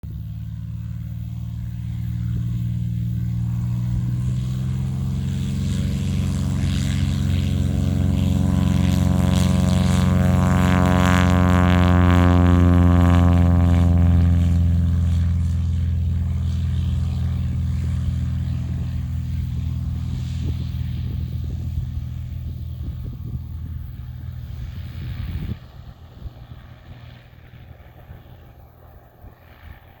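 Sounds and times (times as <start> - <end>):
propeller plane passing: 0.0 - 30.0.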